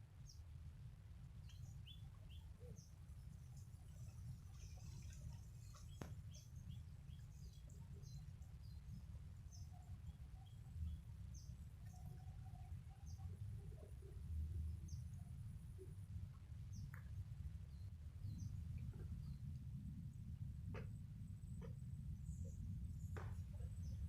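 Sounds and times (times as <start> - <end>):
steady low rumble: 10.0 - 24.0.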